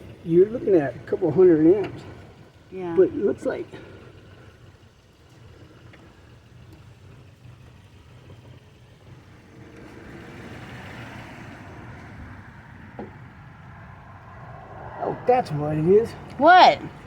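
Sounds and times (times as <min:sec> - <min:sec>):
vehicle engine running: 0:00.0 - 0:17.0
wash of noise: 0:13.3 - 0:17.0.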